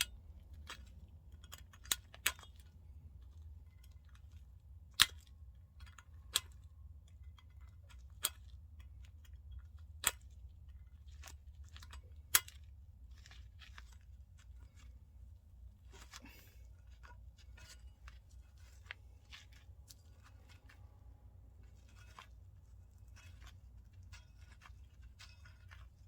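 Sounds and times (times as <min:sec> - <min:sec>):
low steady hum: 0:00.0 - 0:26.0.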